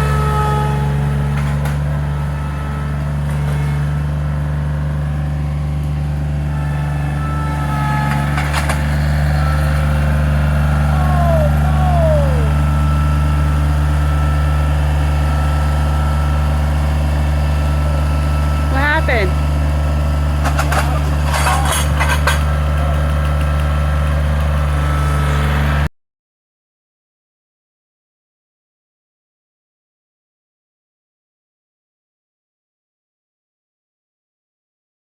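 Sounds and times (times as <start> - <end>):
large engine running: 0.0 - 25.9.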